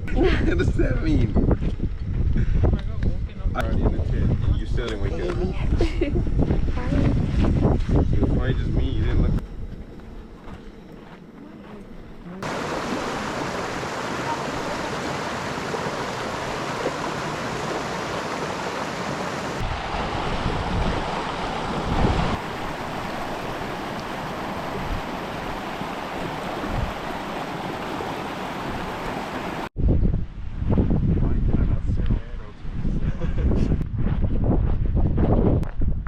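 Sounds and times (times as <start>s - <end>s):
stream water rushing: 12.4s - 29.7s.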